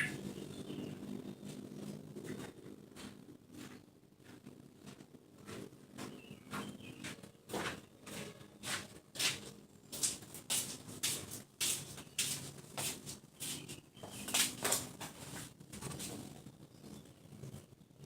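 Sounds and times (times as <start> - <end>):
bird making harsh scratchy calls: 0.0 - 0.2.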